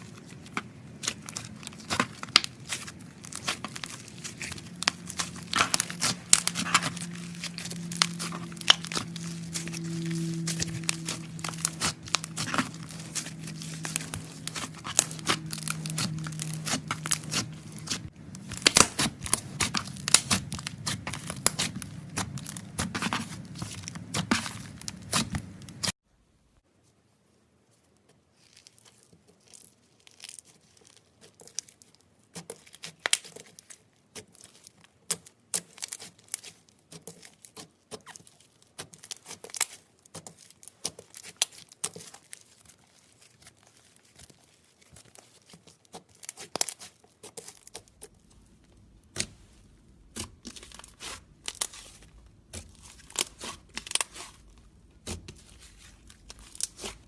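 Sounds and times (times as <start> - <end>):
slime crackling and popping: 0.0 - 26.0, 28.3 - 57.0
low hum: 3.0 - 25.8.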